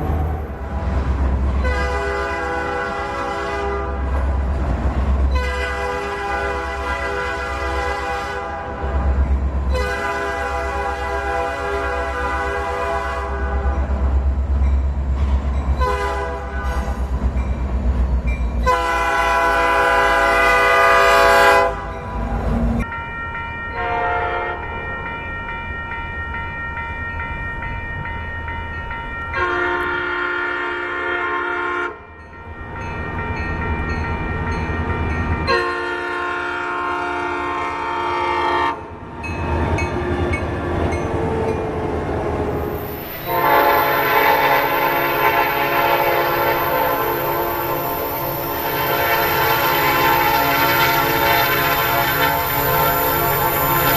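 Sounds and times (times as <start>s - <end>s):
diesel locomotive engine rumble: 0.0s - 53.9s
locomotive air horn blasts: 1.6s - 4.2s, 5.3s - 14.0s, 15.8s - 17.2s, 18.6s - 22.3s, 23.8s - 24.6s, 29.4s - 32.0s, 35.5s - 38.9s, 42.6s - 53.9s.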